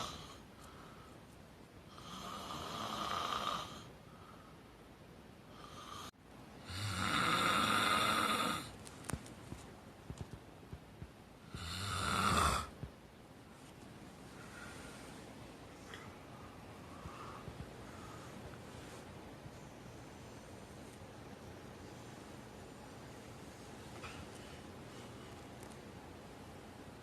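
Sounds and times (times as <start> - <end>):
loud snoring: 0.0 - 0.4, 1.9 - 3.9, 5.6 - 8.7, 11.5 - 12.7.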